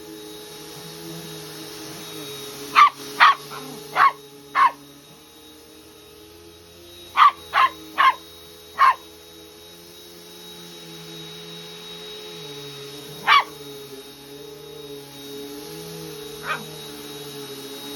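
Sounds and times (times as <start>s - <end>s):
vacuum cleaner humming: 0.0s - 17.9s
dog barking: 2.7s - 4.8s, 7.2s - 8.2s, 8.8s - 9.1s, 13.2s - 13.6s, 16.4s - 16.8s.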